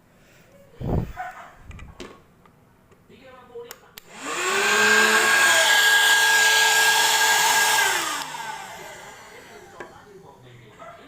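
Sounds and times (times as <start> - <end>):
handheld vacuum cleaner running: 4.0 - 10.2.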